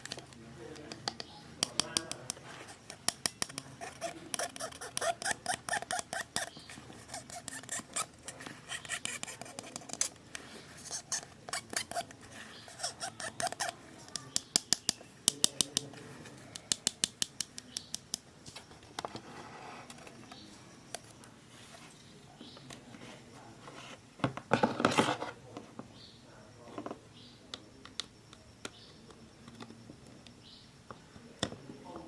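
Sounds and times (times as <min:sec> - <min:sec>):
sharp clicks and snips: 0:00.0 - 0:18.3.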